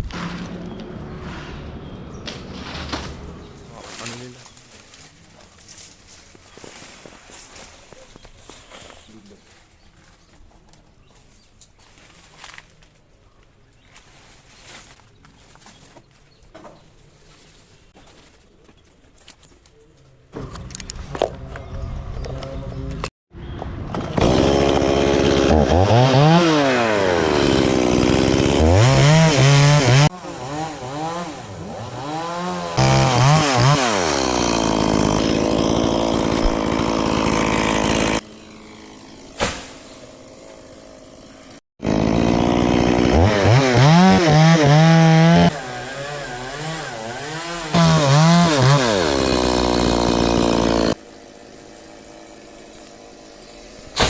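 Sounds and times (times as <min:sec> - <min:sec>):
chainsaw revving: 0:24.2 - 0:39.4, 0:40.0 - 0:53.9.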